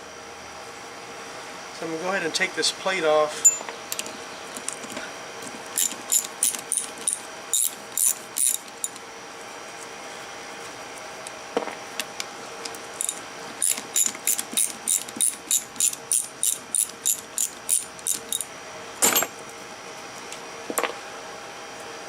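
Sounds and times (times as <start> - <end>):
ratchet wrench clicking: 5.8 - 9.0, 13.0 - 18.5.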